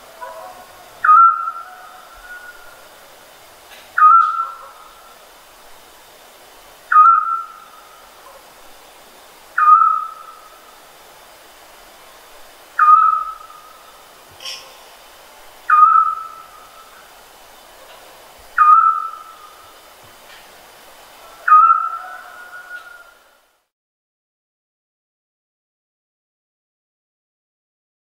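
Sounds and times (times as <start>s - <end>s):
owl whistled call: 1.0s - 2.8s, 4.0s - 4.9s, 6.9s - 7.9s, 9.6s - 10.5s, 12.8s - 13.8s, 15.7s - 16.9s, 18.6s - 19.6s, 21.4s - 23.2s.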